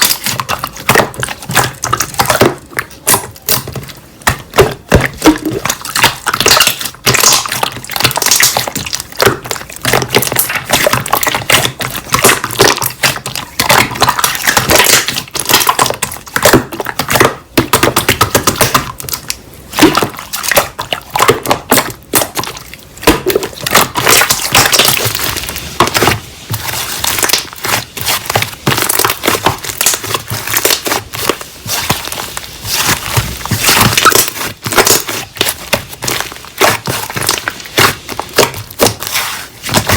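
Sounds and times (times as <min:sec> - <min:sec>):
slime crackling and popping: 0:00.0 - 0:39.9.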